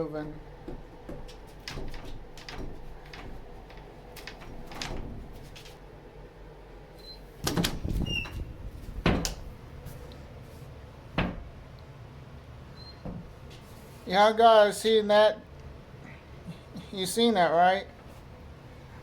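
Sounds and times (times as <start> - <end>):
door knocking in its frame: 0.4 - 5.7, 7.4 - 9.5, 11.2 - 11.6
door handle rattling: 0.4 - 5.8, 7.4 - 9.6.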